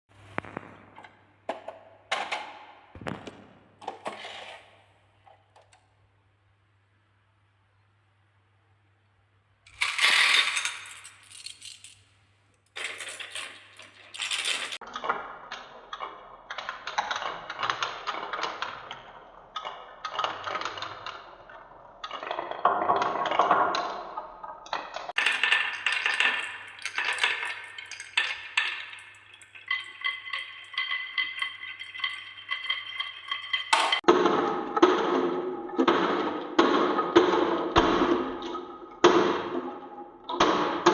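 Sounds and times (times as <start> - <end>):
marbles clattering down wooden run: 9.7 - 12.0, 12.7 - 14.8, 25.1 - 34.1.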